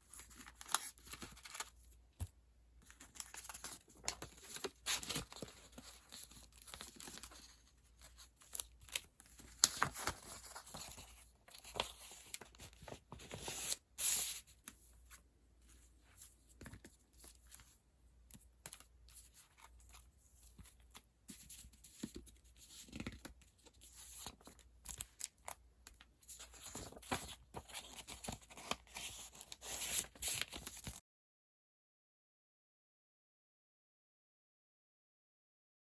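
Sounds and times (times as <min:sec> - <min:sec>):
paper and plastic rustling: 0:02.8 - 0:14.4, 0:26.2 - 0:31.0.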